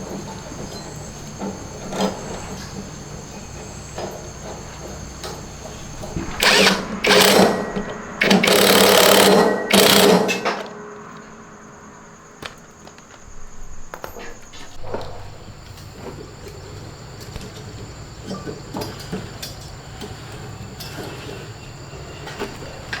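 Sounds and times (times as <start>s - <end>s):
power tool bursts: 4.8s - 11.3s.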